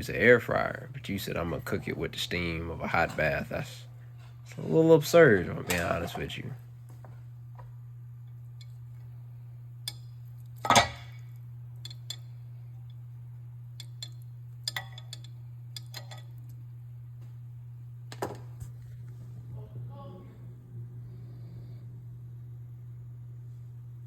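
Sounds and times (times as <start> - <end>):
steady low hum: 0.0 - 24.0
dishes and cutlery clinking: 13.8 - 16.3.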